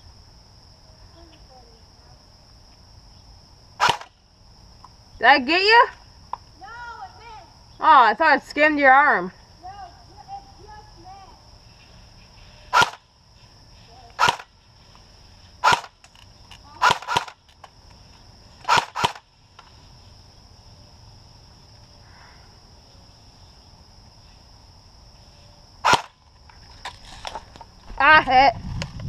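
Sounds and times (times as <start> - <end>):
airsoft gun shots: 3.8 - 4.1, 12.7 - 13.0, 14.2 - 14.5, 15.6 - 16.0, 16.8 - 17.4, 18.6 - 19.2, 25.8 - 26.2.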